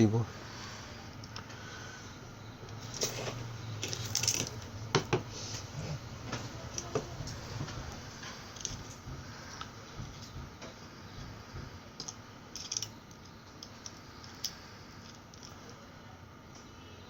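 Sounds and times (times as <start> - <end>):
small parts clicking on workbench: 12.0 - 15.6.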